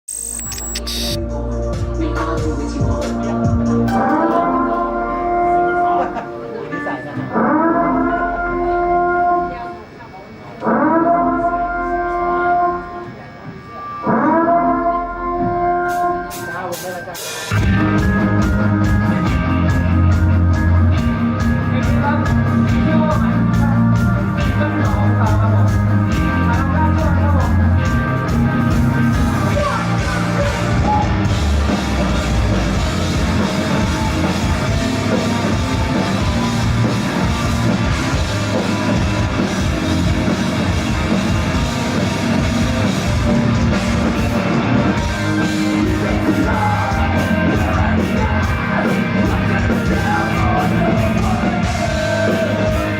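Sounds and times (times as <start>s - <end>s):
bass guitar: 0.0s - 6.2s, 17.5s - 52.9s
distorted guitars: 0.0s - 10.0s, 10.6s - 52.9s
pounding drum kit: 1.0s - 4.4s, 15.4s - 52.9s.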